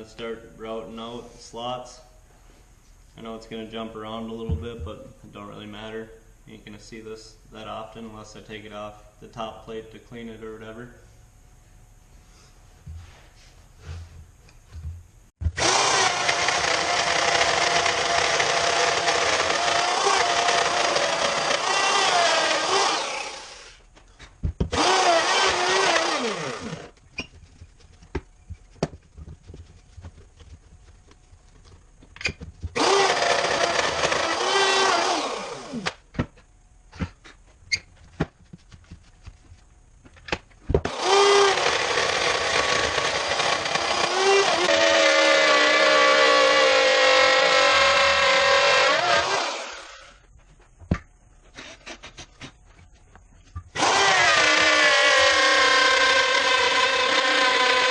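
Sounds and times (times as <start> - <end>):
electric router whining: 15.5 - 23.9, 24.7 - 27.0, 32.7 - 36.0, 40.9 - 50.2, 53.8 - 57.9.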